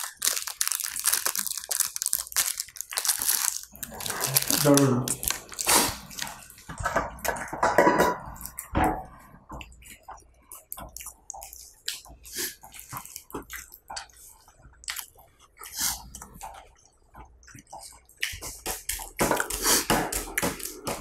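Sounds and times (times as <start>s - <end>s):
biscuit crunching: 0.0s - 7.4s, 9.7s - 21.0s
chewing clicks and smacks: 9.6s - 21.0s.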